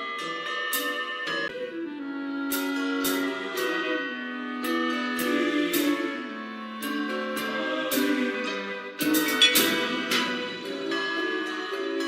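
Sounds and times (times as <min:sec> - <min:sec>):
instrumental music: 0:00.0 - 0:12.0
bright struck accent: 0:09.0 - 0:11.8.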